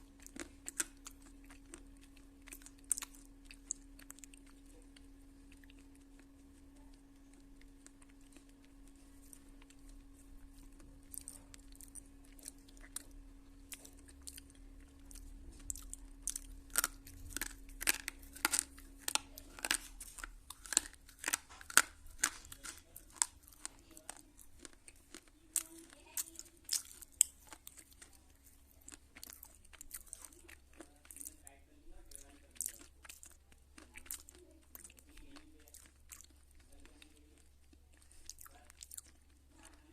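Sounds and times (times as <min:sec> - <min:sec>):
slate pencil crunching when chewed: 0:00.0 - 0:31.4.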